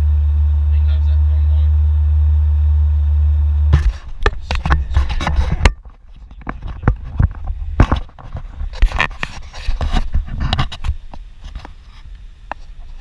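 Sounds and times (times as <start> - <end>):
farm vehicle engine drone: 0.0 - 13.0
sharp clicks and knocks: 3.7 - 11.8.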